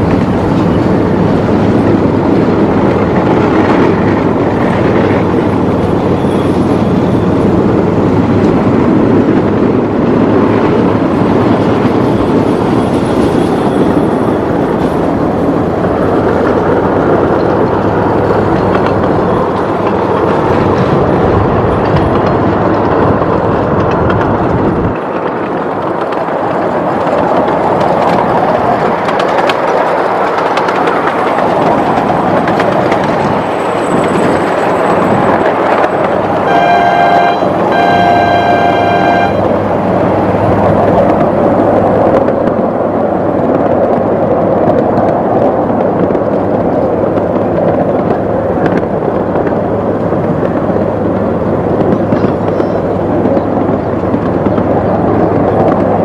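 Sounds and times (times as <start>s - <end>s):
train wheels rumbling on rail: 0.0s - 56.0s
faint high wheel squeals: 5.8s - 7.4s, 52.2s - 53.0s.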